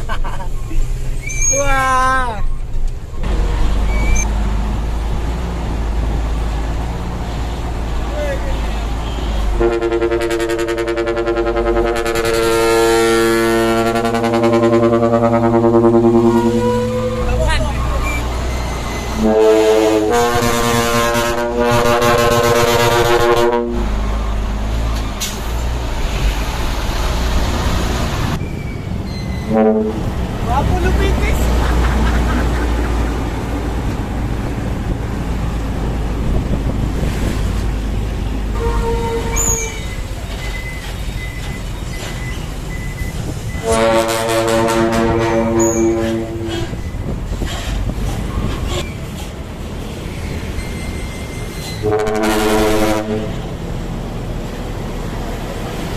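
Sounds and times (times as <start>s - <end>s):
diesel engine rumbling: 0.0s - 55.9s
truck air horn blast: 8.7s - 17.4s, 19.2s - 24.0s, 29.4s - 30.1s, 38.5s - 39.8s, 43.6s - 46.8s, 51.8s - 53.5s.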